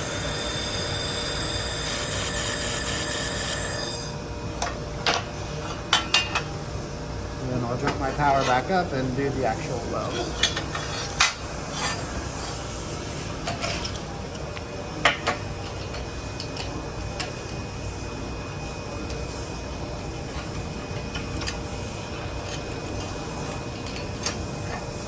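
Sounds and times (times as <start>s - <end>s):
laser welder humming: 0.0s - 4.5s.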